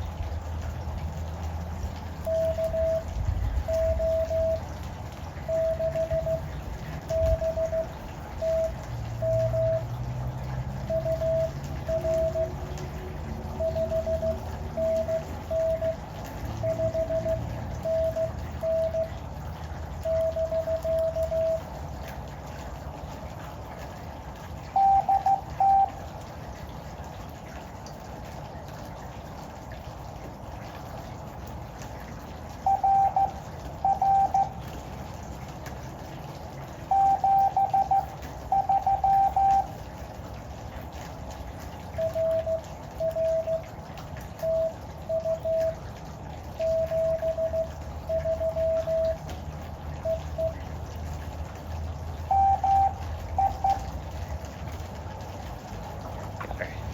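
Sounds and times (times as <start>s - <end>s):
lower-pitched morse code tones: 2.0s - 19.3s, 19.9s - 21.8s, 24.7s - 26.1s, 32.6s - 34.7s, 36.8s - 39.8s, 41.9s - 43.7s, 44.3s - 45.8s, 46.6s - 49.3s, 49.9s - 50.6s, 52.2s - 54.0s
higher-pitched morse code tones: 2.2s - 10.0s, 10.8s - 19.2s, 20.0s - 21.7s, 24.7s - 26.0s, 32.6s - 34.6s, 36.8s - 39.7s, 42.0s - 43.7s, 44.4s - 45.8s, 46.6s - 49.3s, 52.3s - 53.9s
steady radio hiss: 56.4s - 56.9s.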